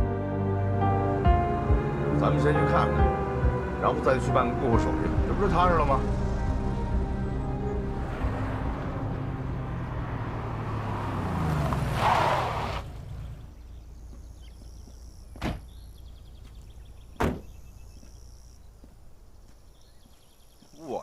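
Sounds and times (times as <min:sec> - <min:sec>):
car driving and stopping: 0:00.8 - 0:19.4
car doors slamming: 0:15.3 - 0:15.8, 0:17.1 - 0:17.6.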